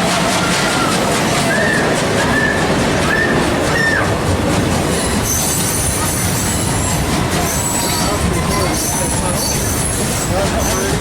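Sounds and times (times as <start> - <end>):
train rumbling on rails: 0.0 - 11.0
high wheel squeals: 4.8 - 11.0.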